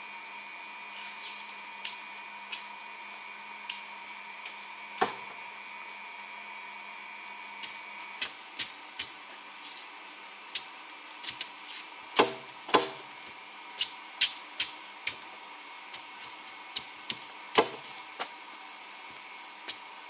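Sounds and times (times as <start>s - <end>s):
hand tool striking wood: 12.2s - 13.0s, 17.5s - 17.9s.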